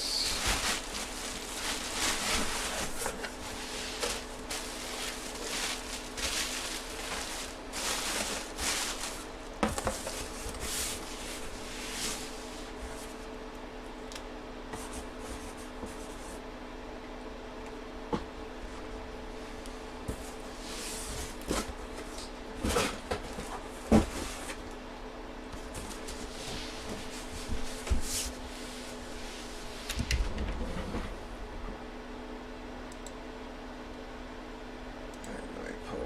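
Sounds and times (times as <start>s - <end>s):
packaging rustling: 0.0s - 12.0s
faint steady hum: 0.0s - 36.0s.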